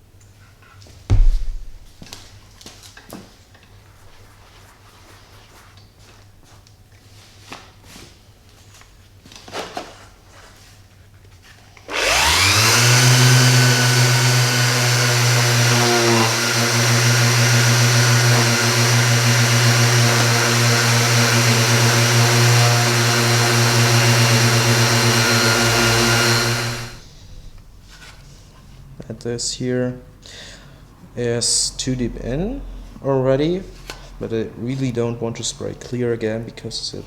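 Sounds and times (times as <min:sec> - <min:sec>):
power tool motor whining: 0:11.9 - 0:27.0.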